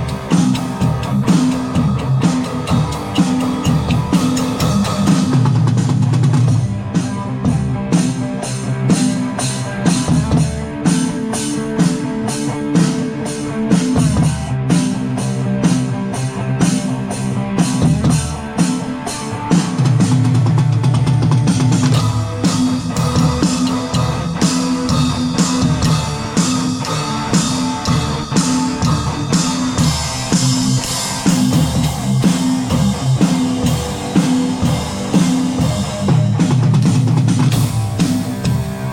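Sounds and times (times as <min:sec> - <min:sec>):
cymbals: 0:00.0 - 0:12.0, 0:21.8 - 0:38.9
drum kit groove: 0:00.0 - 0:38.9
repeating guitar riff: 0:21.9 - 0:36.6.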